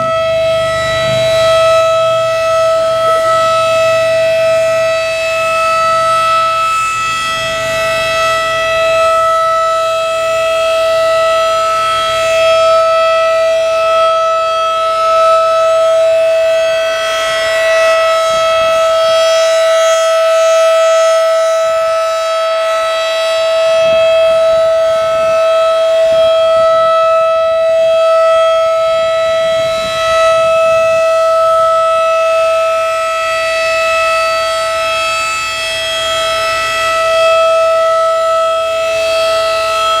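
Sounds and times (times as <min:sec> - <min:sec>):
warning siren steady tone: 0:00.0 - 0:40.0.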